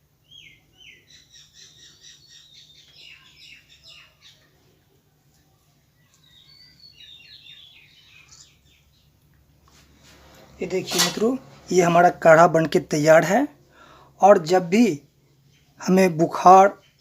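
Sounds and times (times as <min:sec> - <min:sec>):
faint bird chirping: 0:00.0 - 0:17.0
steady low hum: 0:08.2 - 0:14.3.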